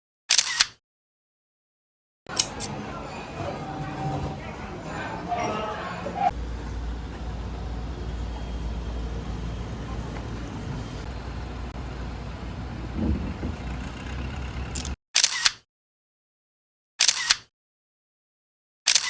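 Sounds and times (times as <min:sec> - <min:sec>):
low background rumble: 0:05.8 - 0:15.0
camera shutter click: 0:17.0 - 0:17.5.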